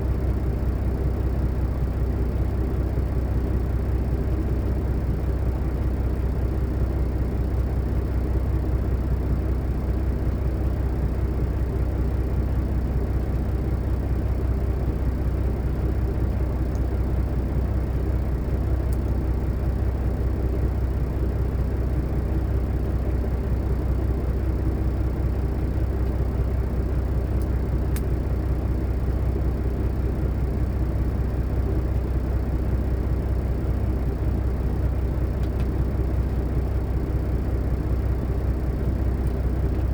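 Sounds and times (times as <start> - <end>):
diesel engine idling: 0.0 - 39.9.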